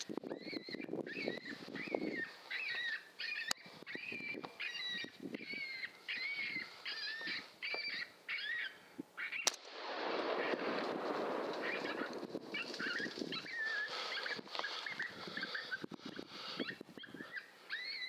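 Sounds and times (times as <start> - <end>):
sharp crack: 9.4 - 14.8.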